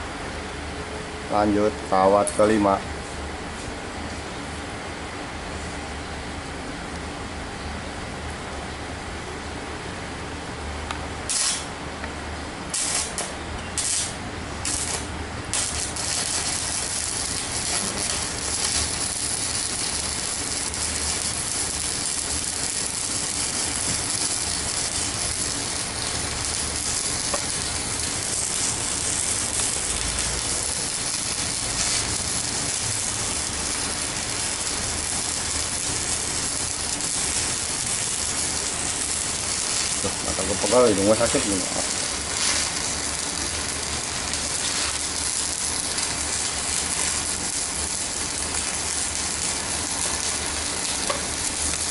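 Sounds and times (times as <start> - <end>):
arc welding crackling hiss: 1.3 - 2.8, 10.9 - 51.9
arc striking crackles: 10.8 - 51.9.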